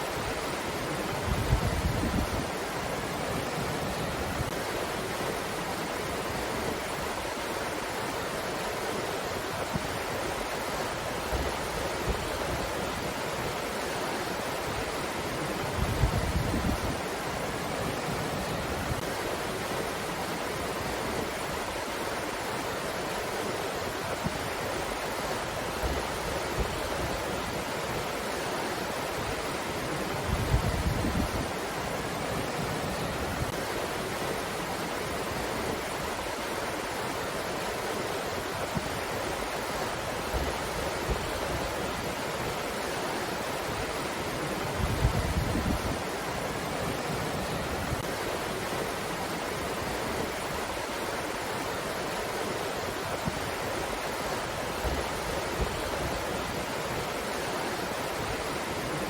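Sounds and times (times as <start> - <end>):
rushing breeze: 0.0 - 59.0
wind buffeting microphone: 15.7 - 17.0, 44.7 - 46.0.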